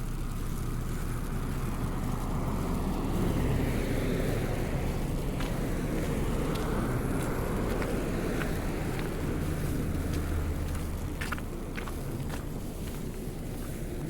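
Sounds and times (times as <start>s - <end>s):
road traffic passing: 0.0s - 14.0s.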